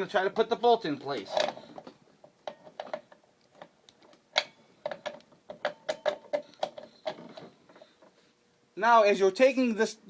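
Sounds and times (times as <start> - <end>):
metal clicks and taps: 1.2 - 7.3.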